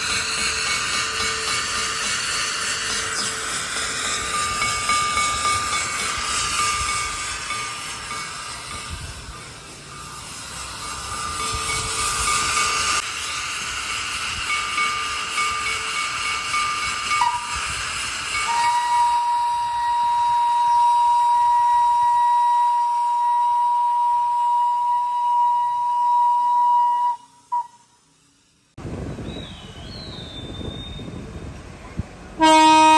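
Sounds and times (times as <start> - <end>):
hissing steam: 0.0 - 32.9
steam locomotive whistle: 14.5 - 28.1, 29.2 - 31.2, 32.4 - 32.9.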